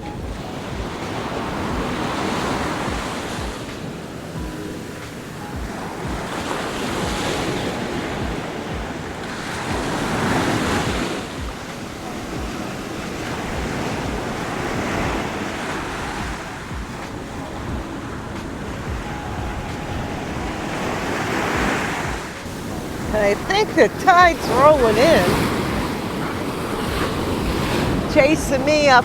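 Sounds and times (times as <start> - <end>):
heavy surf breaking: 0.0 - 29.0
wave crash: 0.0 - 29.0
wind buffeting microphone: 0.0 - 29.0.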